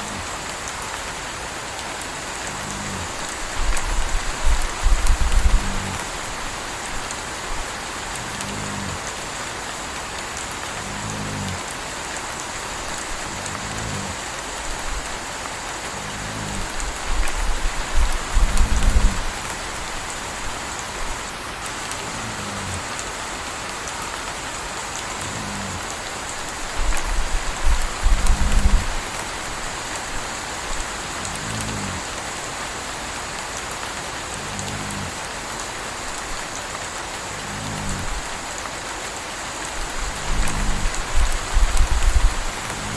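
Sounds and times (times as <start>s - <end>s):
steady rain falling: 0.0s - 42.9s
puppy snoring: 2.4s - 9.2s, 10.7s - 11.8s, 12.8s - 15.2s, 15.8s - 23.2s, 25.0s - 29.6s, 31.2s - 32.0s, 34.3s - 35.2s, 37.3s - 38.4s, 39.8s - 42.9s.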